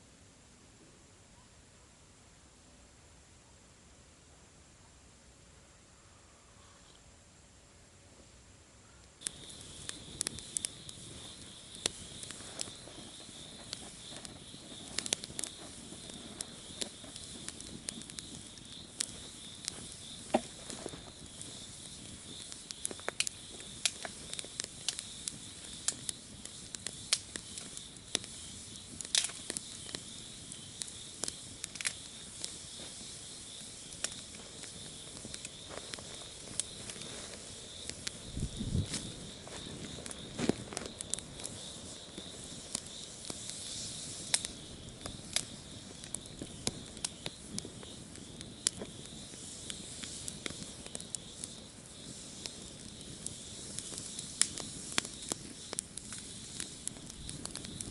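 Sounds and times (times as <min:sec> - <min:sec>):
campfire crackling and popping: 0:09.0 - 0:57.9.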